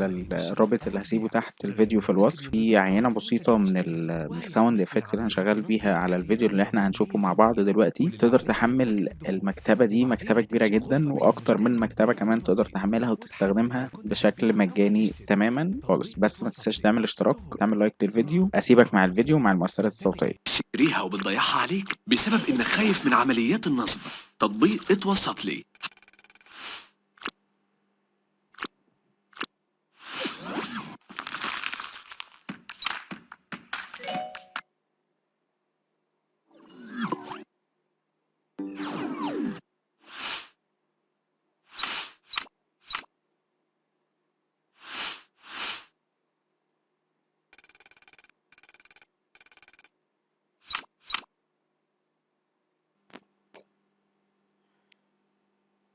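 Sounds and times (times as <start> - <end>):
faint low hum: 0.0 - 25.7
rapid clicking with ringing tone: 25.8 - 26.6, 47.6 - 49.9.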